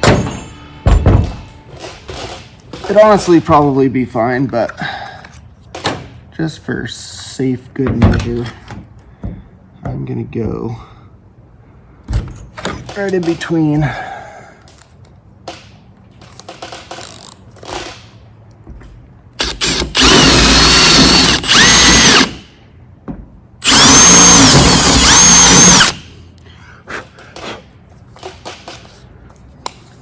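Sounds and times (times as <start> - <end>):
power drill boring metal: 19.4 - 22.4, 23.6 - 26.0.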